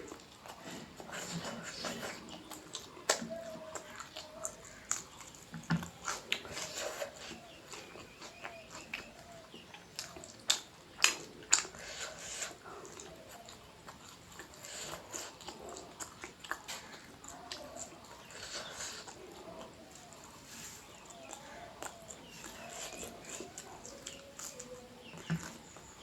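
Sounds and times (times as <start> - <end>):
chewing and wet mouth sounds: 0.0 - 26.0.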